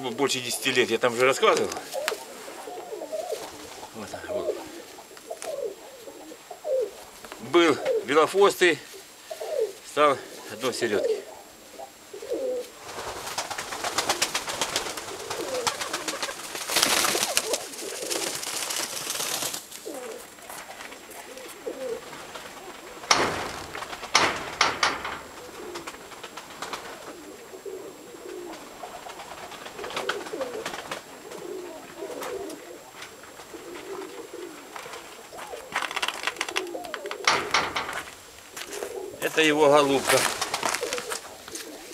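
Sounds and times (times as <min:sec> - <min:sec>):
pigeons cooing: 0:00.0 - 0:41.9
rustling bursts: 0:12.8 - 0:27.4, 0:33.0 - 0:41.9.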